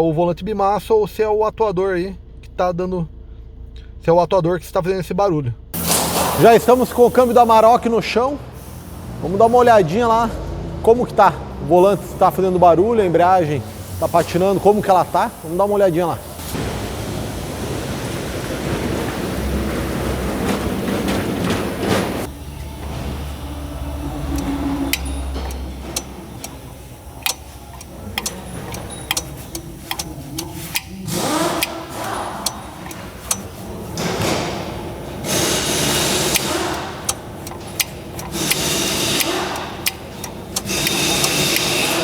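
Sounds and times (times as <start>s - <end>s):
workshop noise: 5.7s - 42.0s
metallic clicks and knocks: 24.2s - 34.5s, 36.0s - 41.7s.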